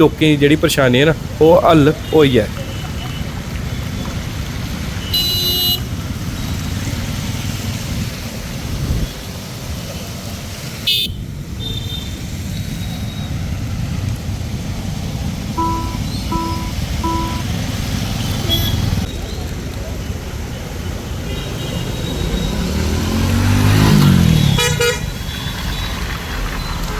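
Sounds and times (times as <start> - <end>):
passing vehicles rumble: 0.0 - 26.9
car horn toot: 5.0 - 5.8, 15.6 - 17.4, 24.6 - 25.1.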